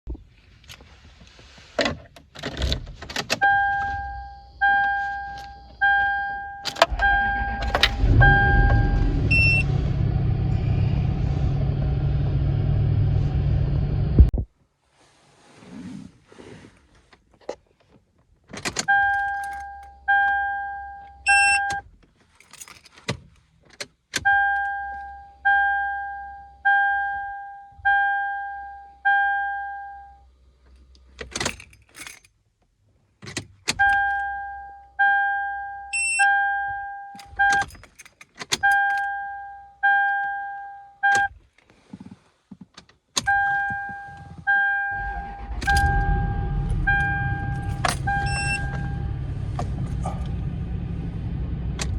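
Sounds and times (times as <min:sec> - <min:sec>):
car engine starting and running: 0:02.2 - 0:14.5, 0:18.6 - 0:21.9, 0:43.2 - 0:51.9
car warning chime dinging: 0:03.4 - 0:09.6, 0:18.9 - 0:21.8, 0:24.3 - 0:30.2, 0:33.8 - 0:37.7, 0:38.6 - 0:41.3, 0:43.3 - 0:49.8.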